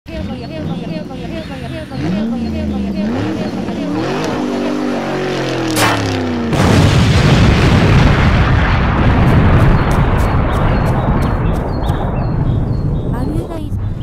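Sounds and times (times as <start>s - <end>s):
pitched sound falling in pitch: 0.1s - 6.0s
loud boom with rumbling noise: 5.6s - 14.0s.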